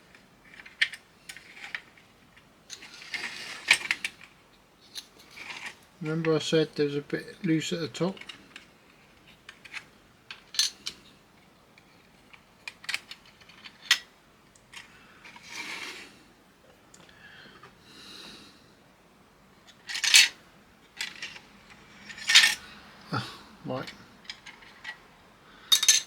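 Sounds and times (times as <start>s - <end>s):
tools and plastic parts clicking: 0.1s - 5.8s, 8.2s - 11.0s, 11.8s - 16.0s, 19.7s - 22.6s, 23.9s - 25.0s, 25.7s - 26.0s.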